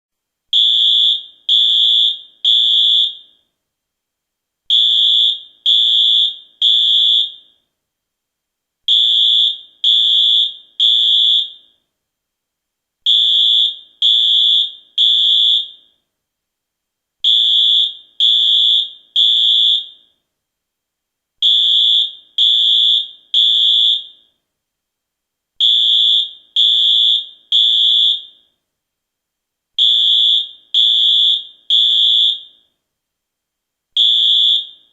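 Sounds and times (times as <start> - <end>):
fire alarm beeps: 0.6 - 3.4, 4.7 - 7.6, 8.9 - 11.8, 13.1 - 16.0, 17.3 - 20.2, 21.4 - 24.4, 25.6 - 28.6, 29.8 - 32.7, 34.0 - 34.9.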